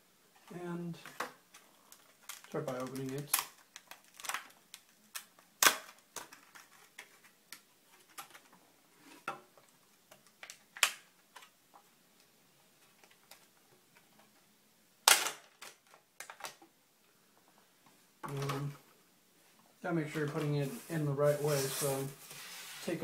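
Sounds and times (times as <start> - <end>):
packaging clicking and snapping: 1.5 - 7.6.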